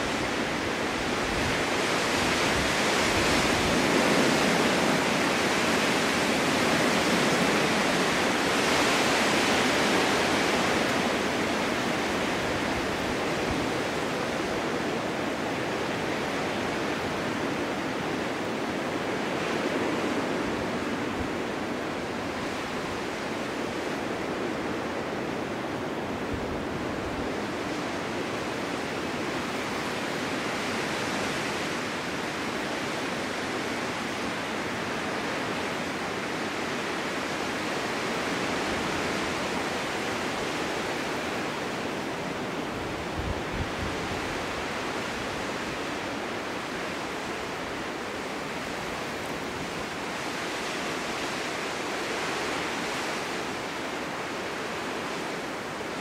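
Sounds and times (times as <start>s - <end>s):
snowstorm wind blowing: 0.0s - 56.0s.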